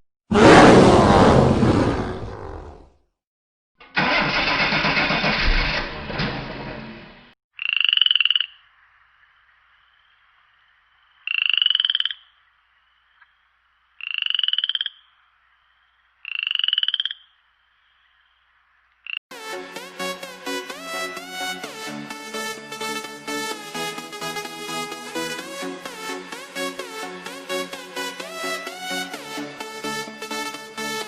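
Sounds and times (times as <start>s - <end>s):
frog croaking: 7.5s - 19.2s.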